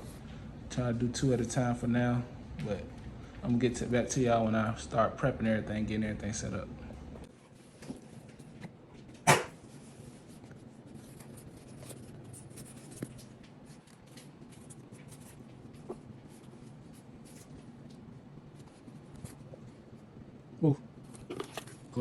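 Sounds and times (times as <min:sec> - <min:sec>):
low steady hum: 0:00.0 - 0:22.0
scratchy rubbing with ticks: 0:09.3 - 0:17.9.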